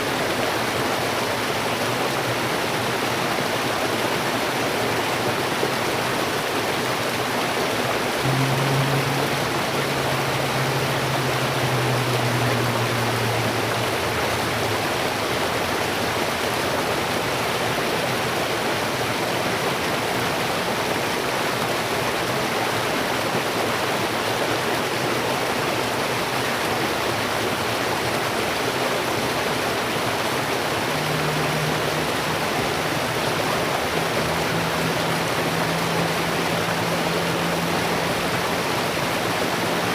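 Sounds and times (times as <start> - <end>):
river water rushing: 0.0 - 39.9
low steady hum: 8.1 - 22.4, 26.9 - 39.9.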